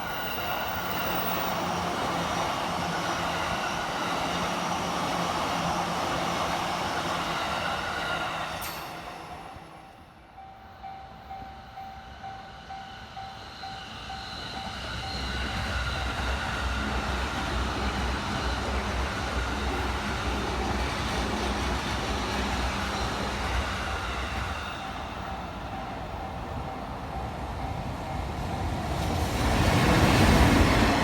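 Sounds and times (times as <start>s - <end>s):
train rumbling over crossing: 0.0s - 31.0s
level-crossing warning bell: 9.9s - 16.4s, 22.6s - 29.2s.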